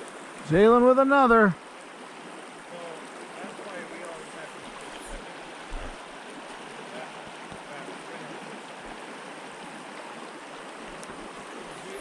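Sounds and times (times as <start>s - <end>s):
stream rushing over rocks: 0.0s - 12.0s.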